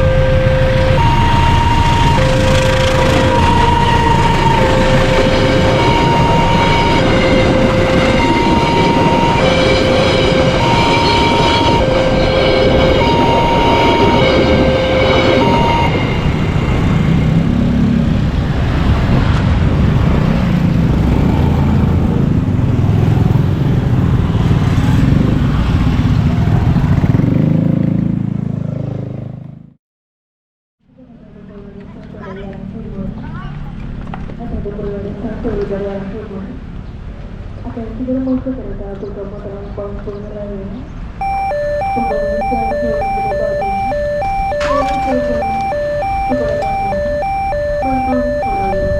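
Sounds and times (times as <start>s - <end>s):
level crossing two-tone siren: 0.0s - 16.0s, 41.2s - 48.9s
train passing: 0.0s - 17.5s.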